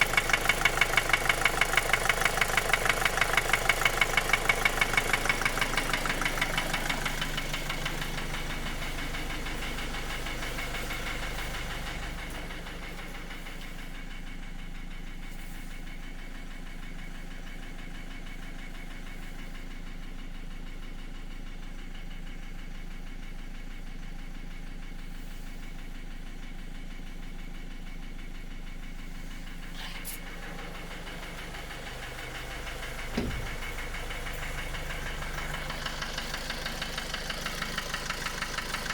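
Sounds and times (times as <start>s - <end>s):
diesel engine idling with knock: 0.0s - 38.9s
sharp thump: 33.1s - 33.8s.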